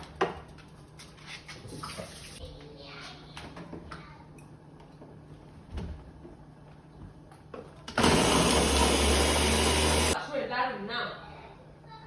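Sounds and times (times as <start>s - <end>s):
kitchen appliance motor whirring: 7.9s - 10.2s.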